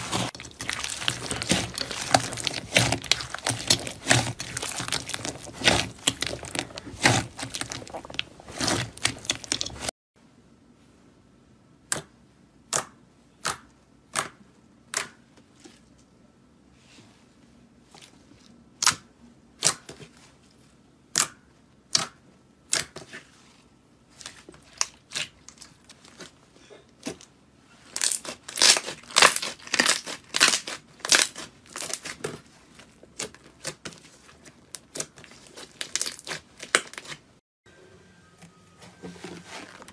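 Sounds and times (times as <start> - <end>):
slime crackling and popping: 0.0 - 9.9, 28.0 - 32.4, 34.6 - 37.2.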